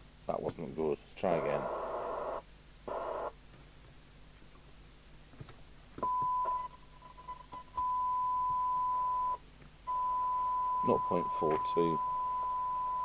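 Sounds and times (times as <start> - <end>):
radio test tone: 1.3 - 3.3, 9.9 - 13.0.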